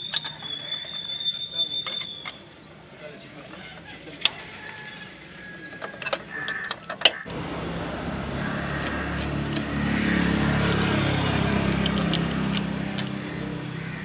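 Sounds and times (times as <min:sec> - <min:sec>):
metal tool clicking on engine: 0:00.0 - 0:02.4, 0:05.6 - 0:07.3, 0:08.8 - 0:13.5
low engine hum: 0:07.3 - 0:14.0.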